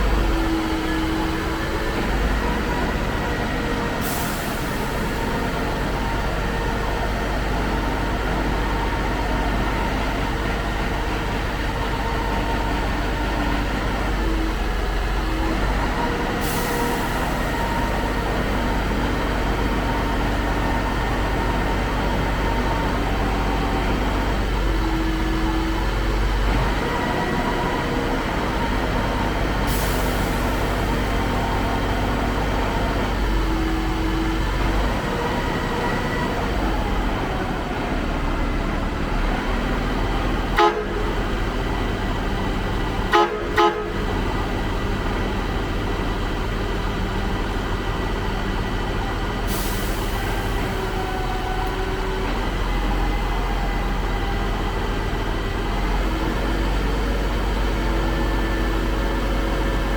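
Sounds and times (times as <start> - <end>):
diesel engine rumbling: 0.0 - 59.9
vehicle horn toots: 40.5 - 41.2, 43.1 - 44.2.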